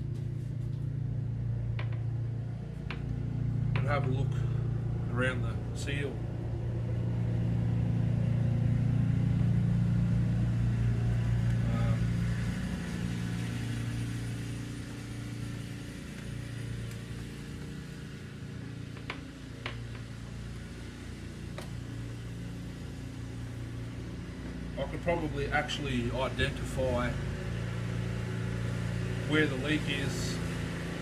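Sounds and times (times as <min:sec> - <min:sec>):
low engine hum: 0:00.0 - 0:31.0.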